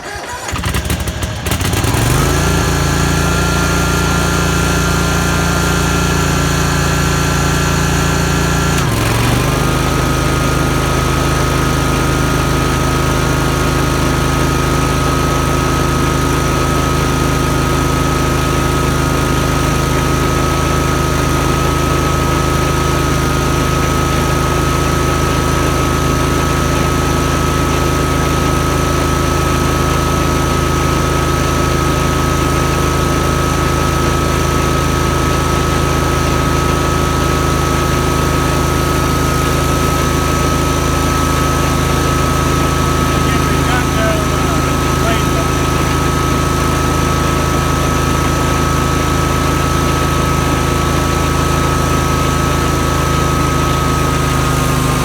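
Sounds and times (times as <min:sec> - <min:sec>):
mower engine running: 0:00.0 - 0:55.0
high whine: 0:43.0 - 0:48.0.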